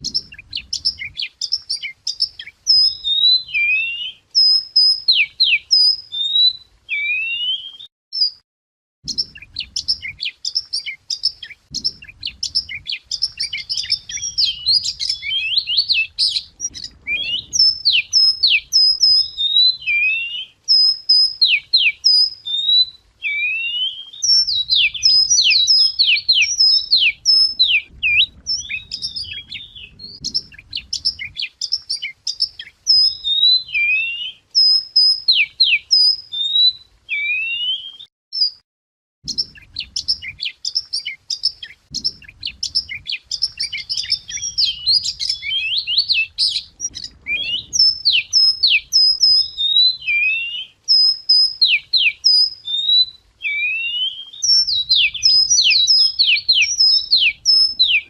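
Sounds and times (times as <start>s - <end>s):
bird singing chirps and trills: 0.0s - 8.4s, 9.0s - 38.6s, 39.2s - 58.0s
faint low rumble: 11.7s - 18.8s, 27.5s - 31.4s, 41.9s - 49.0s.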